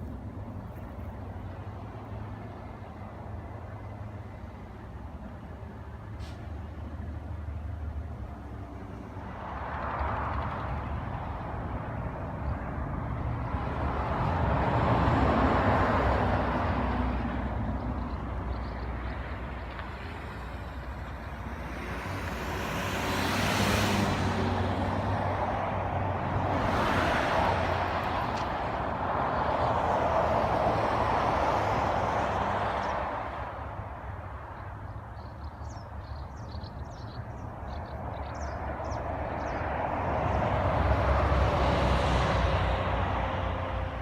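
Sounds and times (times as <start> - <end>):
traffic rumble and tyre hiss: 0.0 - 44.0.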